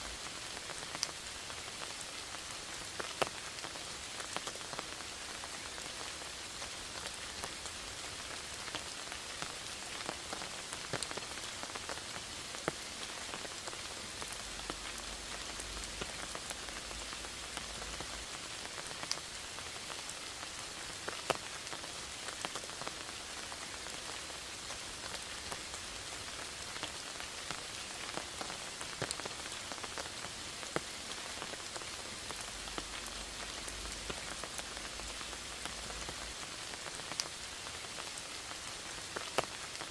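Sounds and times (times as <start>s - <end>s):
steady rain hiss: 0.0s - 39.9s
raindrops tapping on surfaces: 26.4s - 39.9s.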